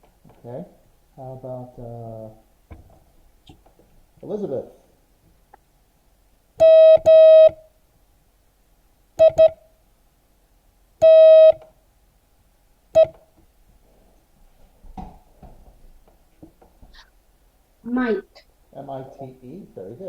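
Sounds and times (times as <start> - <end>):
morse code beeps: 6.6 - 7.6, 9.2 - 9.6, 11.0 - 11.6.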